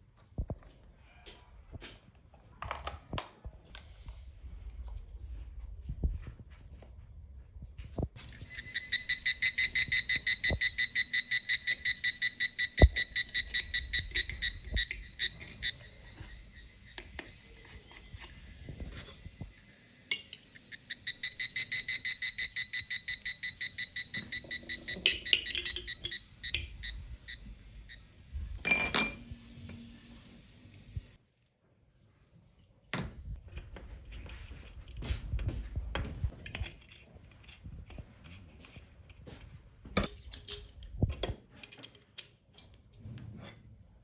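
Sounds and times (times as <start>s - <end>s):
electronic beeper pulsing: 8.4s - 16.7s, 20.5s - 28.1s.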